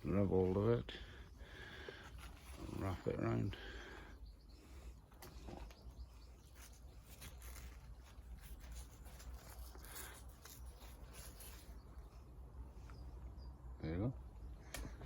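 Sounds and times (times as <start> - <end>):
rustling and clicks of leaves: 5.1 - 13.1.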